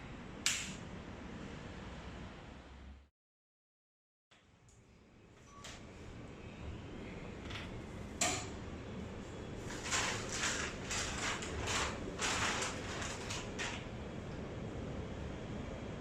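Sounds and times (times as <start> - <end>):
metal sliding and rattling: 9.6 - 14.0.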